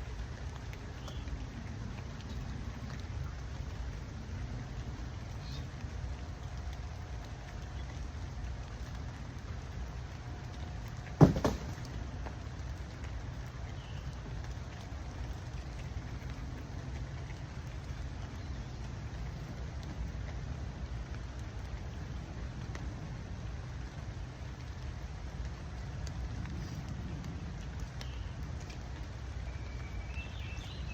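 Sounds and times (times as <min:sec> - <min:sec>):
steady rain falling: 0:00.0 - 0:30.9
sharp loud knock: 0:11.2 - 0:11.9.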